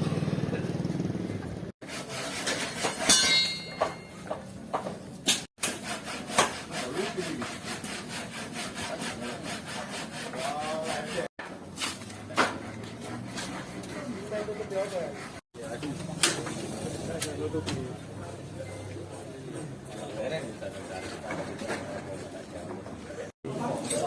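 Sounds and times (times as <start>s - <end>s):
motorcycle engine running: 0.0s - 1.7s
hand saw cutting wood: 1.8s - 4.4s, 5.3s - 15.8s.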